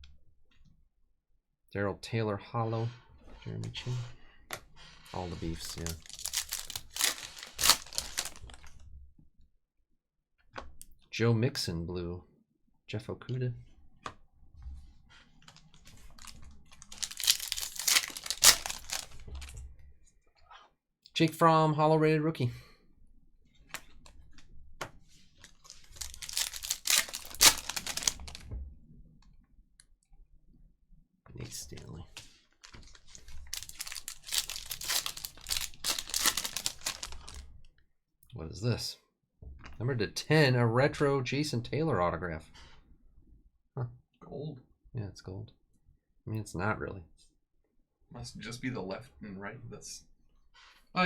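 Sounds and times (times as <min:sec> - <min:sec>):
wrapper crinkling and tearing: 0:05.4 - 0:08.7, 0:15.8 - 0:19.5, 0:25.4 - 0:28.4, 0:32.6 - 0:37.4.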